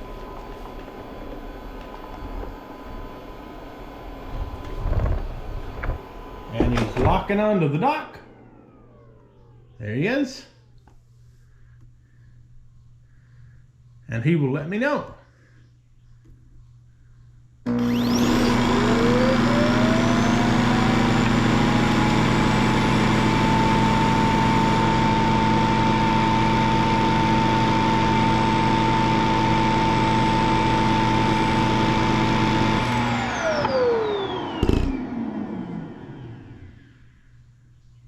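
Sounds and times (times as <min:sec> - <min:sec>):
robot vacuum dock suction whine: 0:00.0 - 0:09.7, 0:17.7 - 0:37.2.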